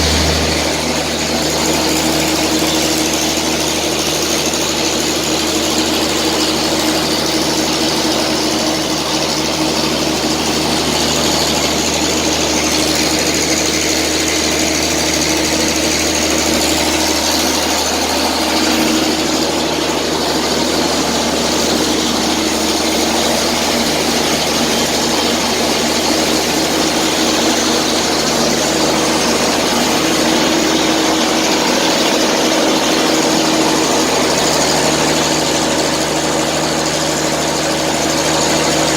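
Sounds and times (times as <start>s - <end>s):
rushing air: 0.0s - 1.7s
industrial motors and fans droning: 0.0s - 38.9s.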